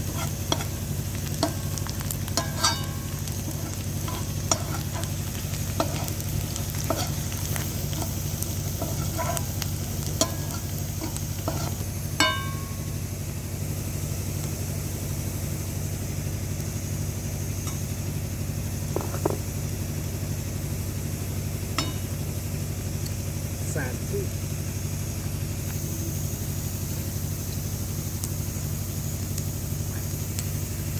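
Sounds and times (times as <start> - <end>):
utensil clicking against pan: 0.0 - 12.6
food sizzling in a frying pan: 0.0 - 30.9
steady low hum: 0.0 - 30.9
ringing metal clink: 2.4 - 3.1, 12.2 - 13.0, 21.8 - 22.1.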